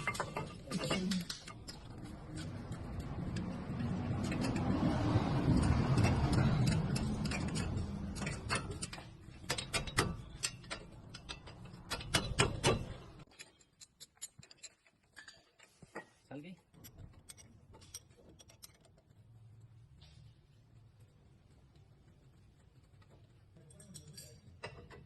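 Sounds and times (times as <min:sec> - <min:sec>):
sharp metallic clicks: 0:05.4 - 0:14.9.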